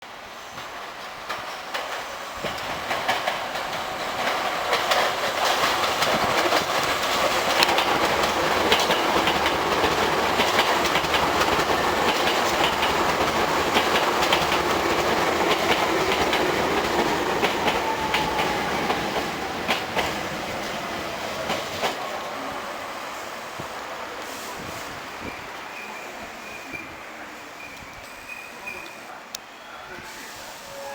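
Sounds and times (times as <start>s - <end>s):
electric train whine: 0.1s - 30.9s
train wheels clacking over rail joints: 0.6s - 22.0s.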